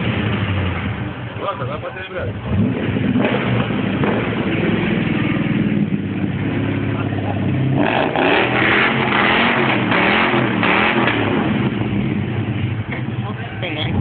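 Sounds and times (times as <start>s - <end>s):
car engine idling and revving: 0.0s - 14.0s.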